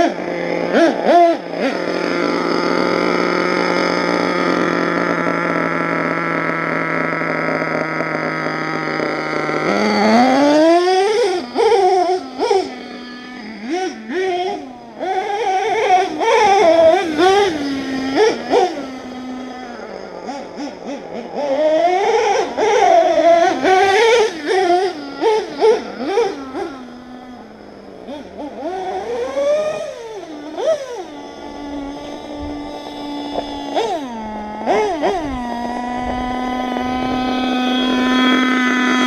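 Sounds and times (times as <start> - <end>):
small nitro engine revving: 0.0 - 39.0.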